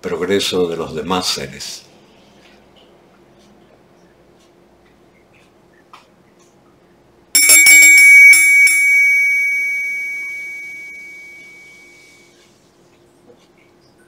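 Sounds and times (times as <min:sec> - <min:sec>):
small metal bell ringing: 0:07.4 - 0:12.2.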